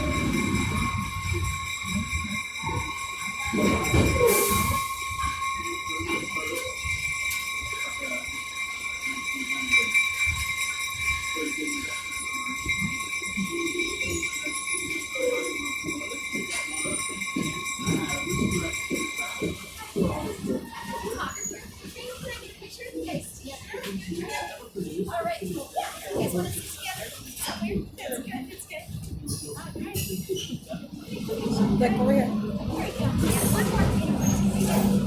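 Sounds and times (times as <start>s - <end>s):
passenger train running: 0.0s - 26.0s, 29.6s - 35.0s
passengers chattering: 0.0s - 35.0s
high-pitched whine: 31.3s - 35.0s.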